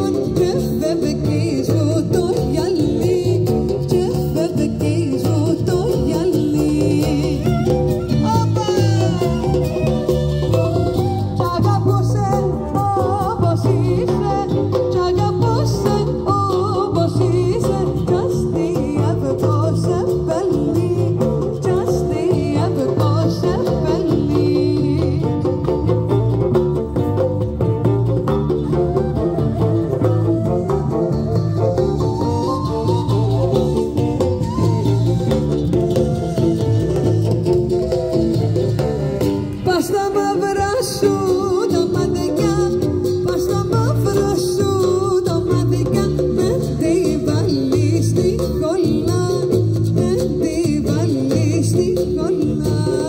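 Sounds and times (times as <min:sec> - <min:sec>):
person singing: 0:00.0 - 0:10.2, 0:11.3 - 0:25.8, 0:28.7 - 0:53.0
live band playing: 0:00.0 - 0:53.0
plucked strings: 0:00.0 - 0:53.0
wavering melody line: 0:28.1 - 0:40.0.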